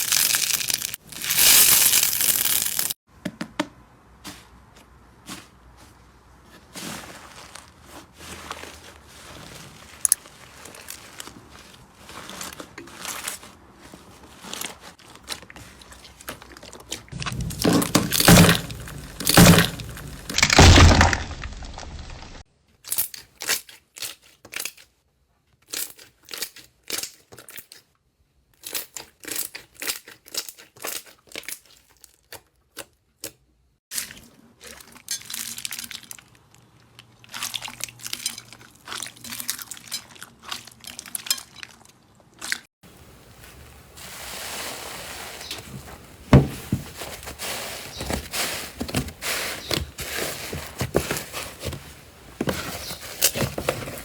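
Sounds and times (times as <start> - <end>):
slime clicking and crackling: 0.0 - 3.0.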